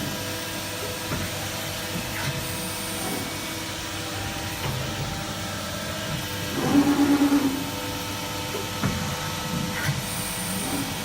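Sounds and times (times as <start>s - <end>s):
hydraulic pump hum: 2.7s - 11.0s.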